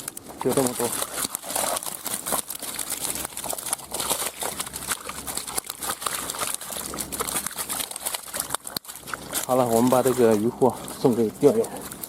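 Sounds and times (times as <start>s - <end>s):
crinkling and rustling handling noise: 0.0s - 12.0s.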